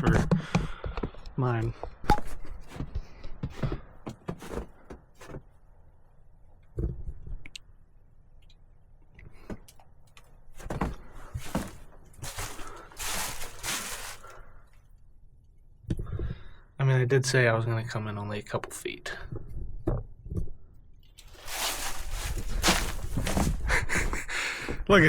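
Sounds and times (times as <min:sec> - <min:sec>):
footsteps on snow and rock: 0:10.7 - 0:14.4, 0:21.2 - 0:24.2
crunching rustles: 0:10.9 - 0:14.5, 0:21.2 - 0:24.2.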